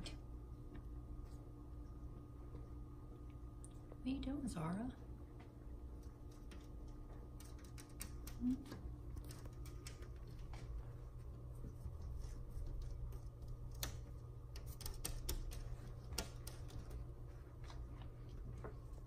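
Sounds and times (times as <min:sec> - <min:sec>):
steady low hum: 0:00.0 - 0:19.0
cat claws scratching at window: 0:12.0 - 0:16.9.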